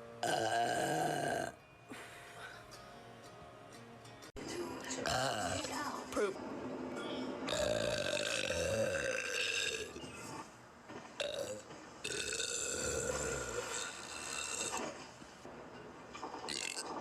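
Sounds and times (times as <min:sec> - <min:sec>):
woman burping: 0:00.2 - 0:02.1, 0:05.0 - 0:06.3, 0:07.5 - 0:10.1, 0:11.2 - 0:14.9.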